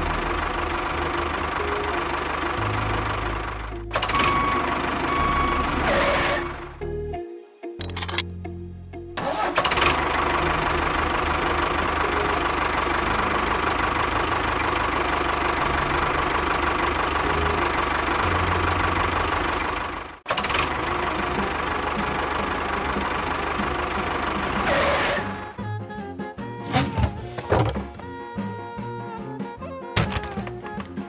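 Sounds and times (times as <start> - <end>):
small engine running: 0.0 - 6.6, 9.2 - 25.8.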